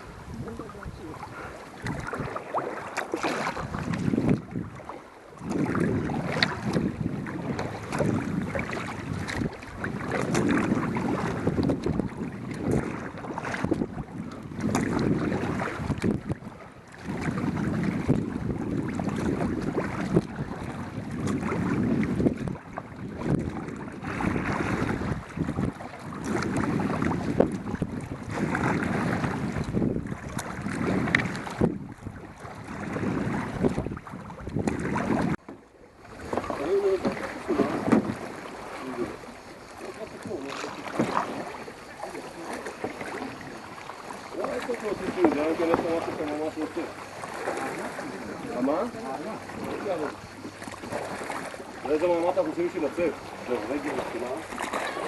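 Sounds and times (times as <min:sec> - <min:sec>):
wind buffeting microphone: 0:00.0 - 0:42.1
water sounds from kayak: 0:00.0 - 0:55.0.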